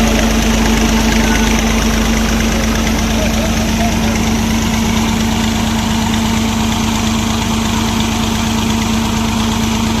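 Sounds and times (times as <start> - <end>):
tractor diesel engine running: 0.0 - 10.0.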